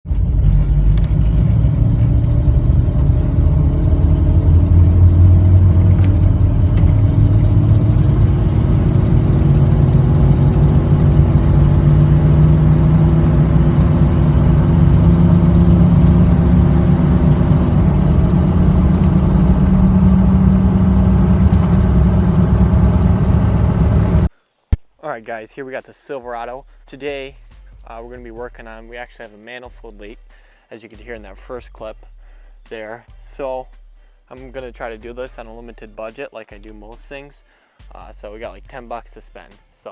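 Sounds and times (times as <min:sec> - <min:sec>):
pickup engine and exhaust running: 0:00.0 - 0:24.3.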